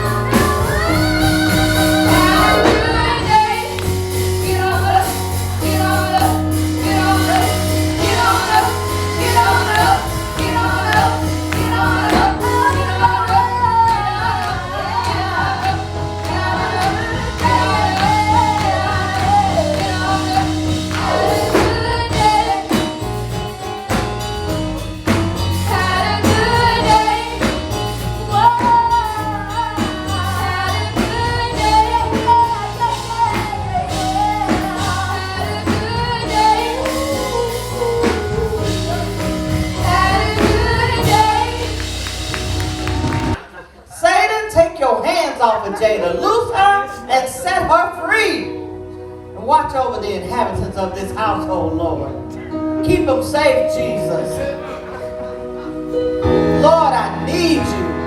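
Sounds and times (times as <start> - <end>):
woman singing gospel: 0.0 - 24.3, 25.4 - 43.4
bass line: 0.0 - 43.4, 48.5 - 58.0
percussion: 0.0 - 43.5.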